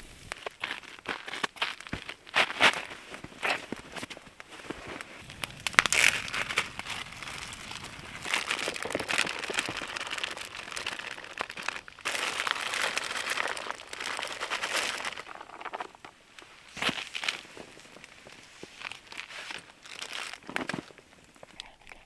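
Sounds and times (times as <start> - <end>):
crinkling and rustling: 0.0 - 22.0.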